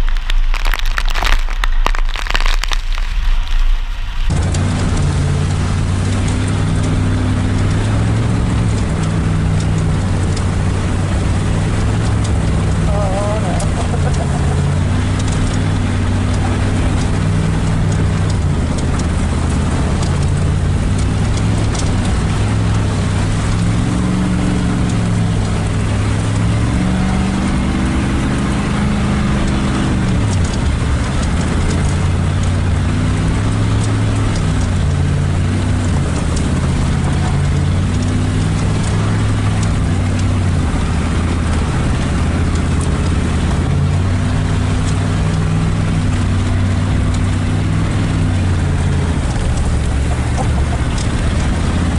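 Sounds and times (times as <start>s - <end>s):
pickup truck engine pulling: 0.0s - 51.9s.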